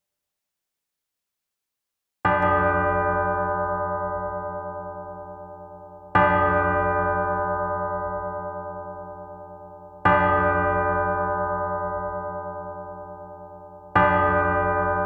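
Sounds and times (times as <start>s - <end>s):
church bell ringing: 2.3s - 15.0s.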